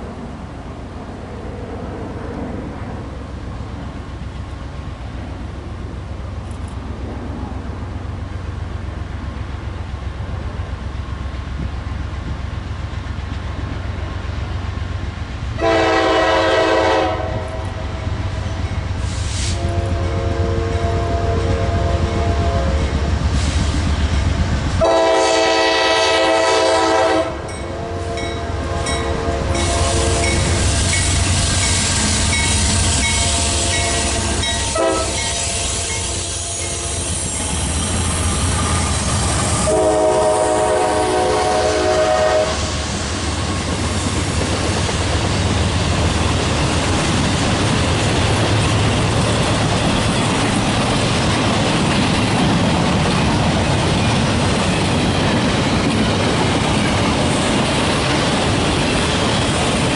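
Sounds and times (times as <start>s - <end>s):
train rumble and wheel clatter: 0.0s - 59.9s
locomotive air horn blasts: 15.6s - 18.1s, 19.0s - 23.6s, 24.8s - 42.8s.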